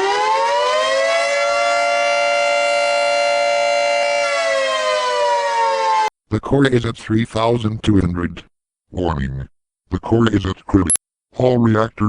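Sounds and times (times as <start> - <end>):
warning siren wailing: 0.0 - 6.1.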